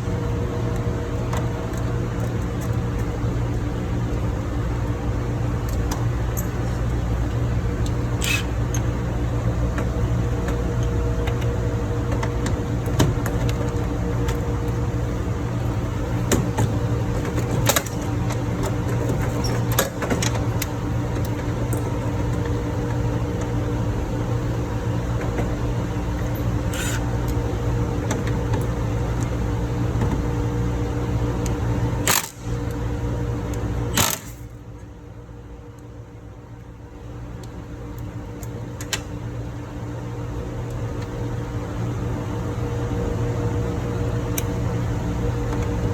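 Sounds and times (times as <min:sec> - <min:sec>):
engine-room machinery drone: 0:00.0 - 0:45.9.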